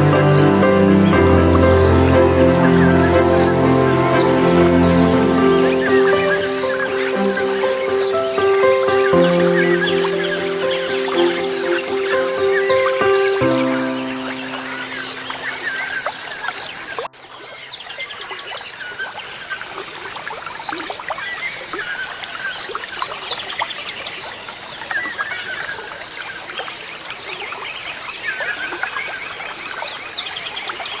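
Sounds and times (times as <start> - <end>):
birds chirping and whistling: 0.0 - 16.2.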